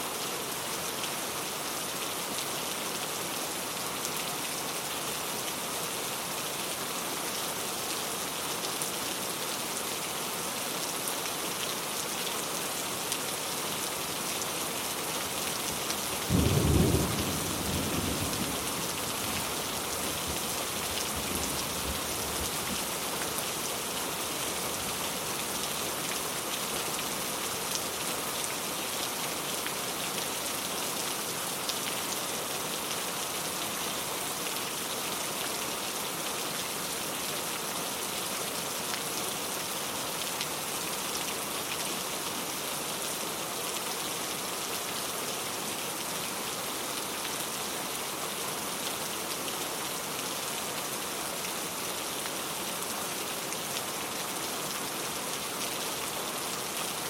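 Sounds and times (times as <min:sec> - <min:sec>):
rain pattering: 0:12.2 - 0:30.2.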